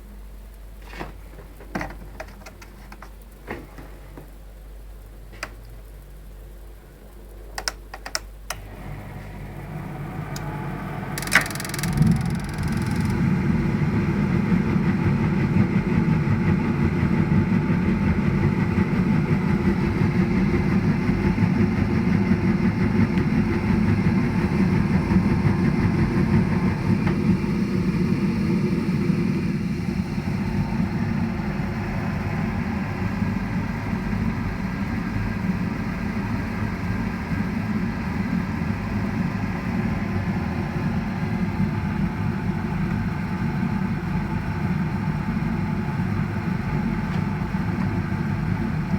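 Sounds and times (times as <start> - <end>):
sharp clicks: 7.6 - 8.6, 11.2 - 13.2.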